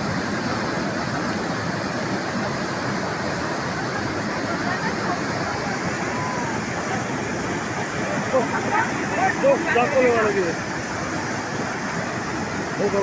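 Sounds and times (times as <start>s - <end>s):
flood water rushing: 0.0s - 13.0s.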